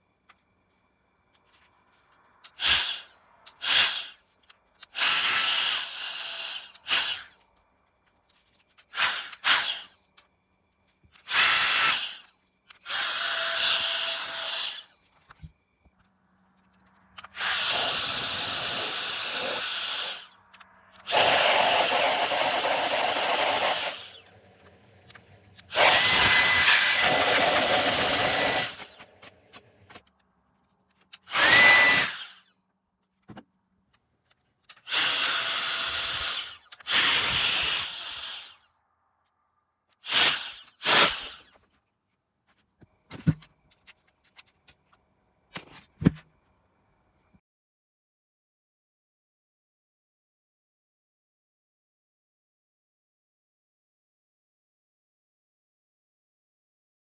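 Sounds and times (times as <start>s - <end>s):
electric air duster blowing: 2.5s - 4.1s, 17.4s - 20.3s, 21.0s - 24.4s, 25.6s - 29.6s, 31.3s - 32.4s, 34.8s - 38.6s, 40.0s - 41.4s.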